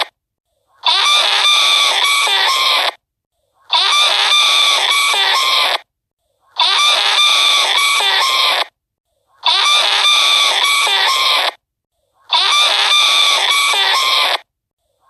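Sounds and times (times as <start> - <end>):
chickens clucking and calling: 0.8 - 3.0, 3.6 - 5.8, 6.5 - 8.7, 9.4 - 11.6, 12.2 - 14.4.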